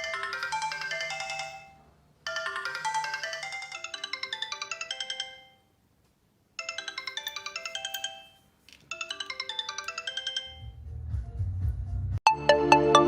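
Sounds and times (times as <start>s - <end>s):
chiming phone ringtone: 0.0s - 5.7s, 6.6s - 10.8s.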